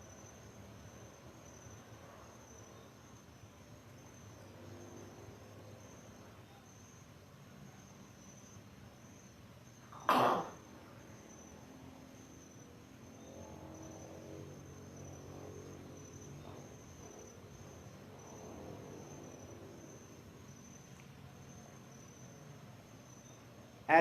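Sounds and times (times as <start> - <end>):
crickets chirring: 0.0 - 24.0
person coughing: 10.1 - 10.5.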